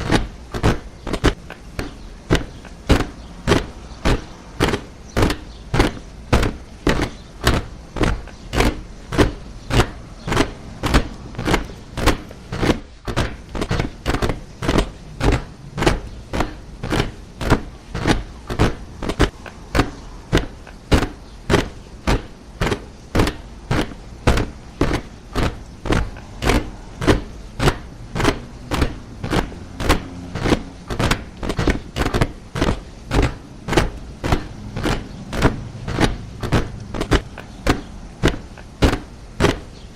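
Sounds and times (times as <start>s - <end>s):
boots marching in step: 0.0s - 39.9s.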